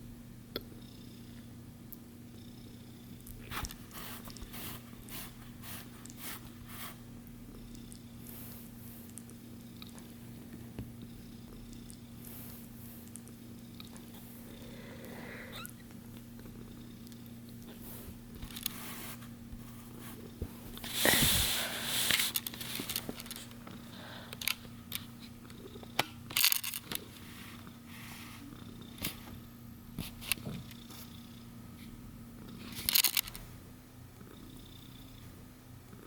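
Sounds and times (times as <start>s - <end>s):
kitten purring: 7.4s - 22.2s, 25.2s - 26.1s, 26.8s - 29.3s, 34.2s - 36.0s.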